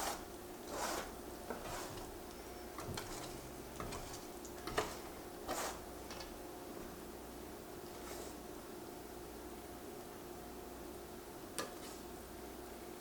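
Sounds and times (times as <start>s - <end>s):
utensil scraping a bowl: 0.0s - 6.3s.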